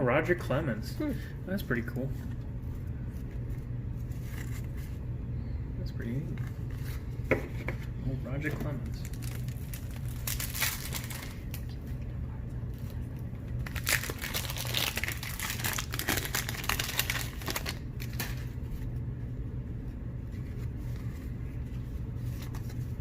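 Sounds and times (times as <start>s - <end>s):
steady low hum: 0.0s - 23.0s
cards rustling: 2.2s - 5.0s, 8.5s - 11.8s, 13.6s - 18.9s
wrapper crinkling: 8.8s - 11.8s, 12.8s - 18.6s.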